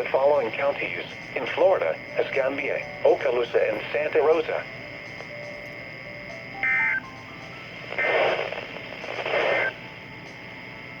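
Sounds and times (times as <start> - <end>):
steady radio hiss: 0.0 - 11.0
warbling two-tone data bursts: 6.6 - 7.1.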